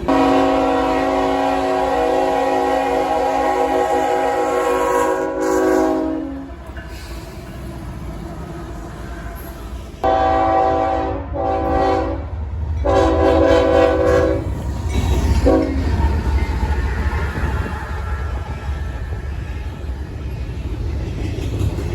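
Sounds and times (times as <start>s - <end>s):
locomotive air horn blasts: 0.0s - 6.5s, 10.0s - 14.5s, 15.4s - 15.8s
train rumbling past: 0.0s - 21.9s.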